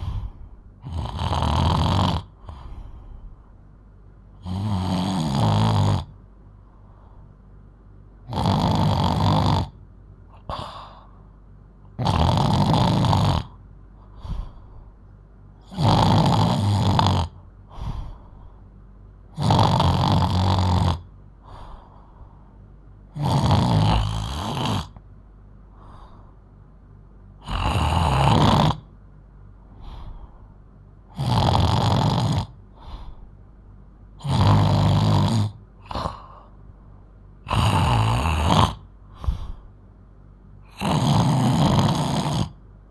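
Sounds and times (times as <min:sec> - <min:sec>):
soft breath: 0:00.0 - 0:00.8, 0:02.4 - 0:03.7, 0:06.6 - 0:07.6, 0:10.4 - 0:11.4, 0:13.9 - 0:15.2, 0:17.6 - 0:18.9, 0:21.4 - 0:22.7, 0:25.6 - 0:26.7, 0:29.6 - 0:30.8, 0:32.7 - 0:33.6, 0:35.8 - 0:37.0, 0:39.0 - 0:39.9
girl snoring loudly: 0:00.0 - 0:02.8, 0:04.4 - 0:06.1, 0:08.3 - 0:09.8, 0:12.0 - 0:13.6, 0:15.6 - 0:17.4, 0:19.4 - 0:21.1, 0:23.1 - 0:25.0, 0:27.4 - 0:28.9, 0:31.1 - 0:33.0, 0:34.2 - 0:36.5, 0:37.5 - 0:39.4, 0:40.6 - 0:42.6.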